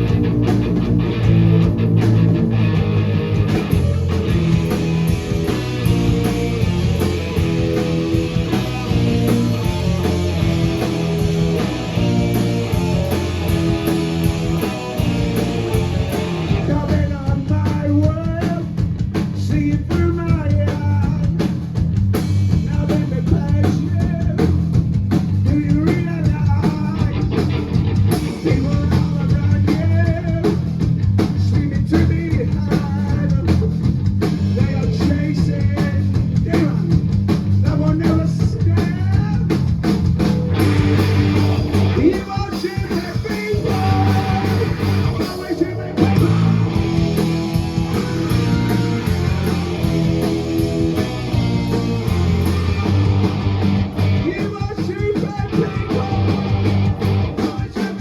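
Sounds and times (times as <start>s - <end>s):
drums: 0.0s - 58.0s
rock band guitar and bass riff: 0.0s - 58.0s
person singing: 41.9s - 47.0s, 54.2s - 58.0s.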